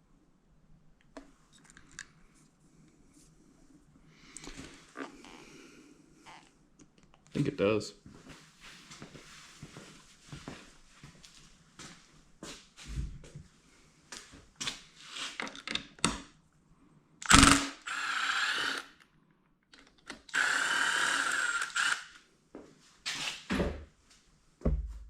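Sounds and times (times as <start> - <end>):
cordless power driver: 17.2 - 18.9, 20.1 - 22.2.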